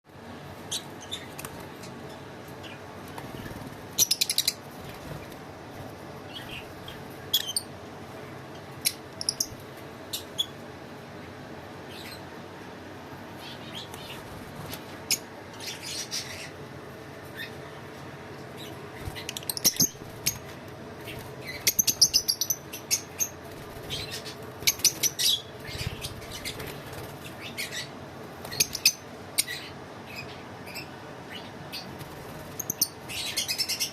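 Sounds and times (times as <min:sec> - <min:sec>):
lovebirds chirping: 0:00.6 - 0:05.4, 0:06.2 - 0:10.7, 0:15.0 - 0:16.6, 0:18.5 - 0:33.9.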